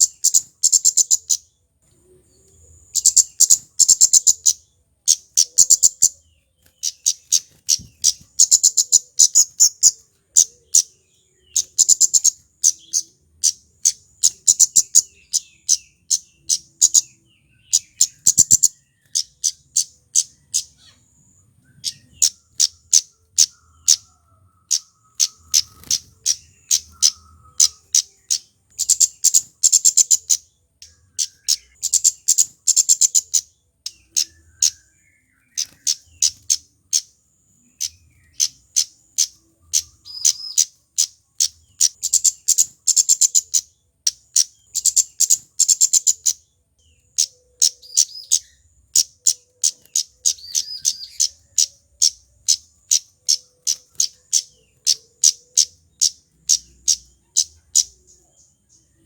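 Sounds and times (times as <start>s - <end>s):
bird calling in sharp high notes: 2.4s - 37.1s.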